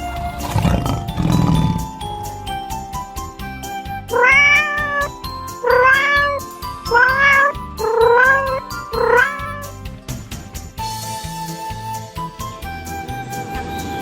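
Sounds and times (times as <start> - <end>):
background music: 0.0 - 14.0
cat meowing: 0.4 - 1.8, 4.1 - 9.8.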